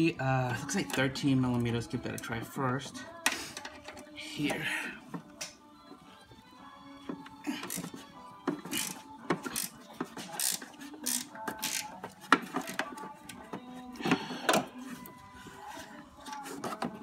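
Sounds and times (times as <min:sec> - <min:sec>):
faint music: 0:00.0 - 0:17.0
socket ratchet clicking: 0:10.4 - 0:12.0.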